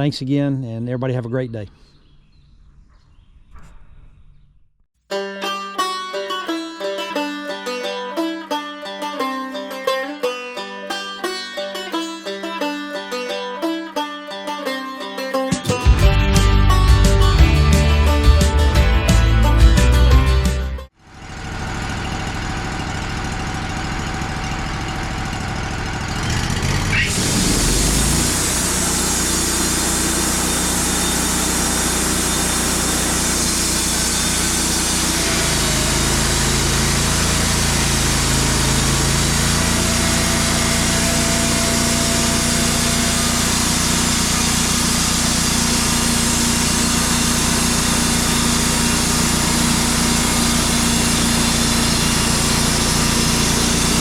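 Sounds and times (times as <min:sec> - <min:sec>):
band sawmill engine humming: 0:15.6 - 0:54.0
saw hissing: 0:26.3 - 0:54.0.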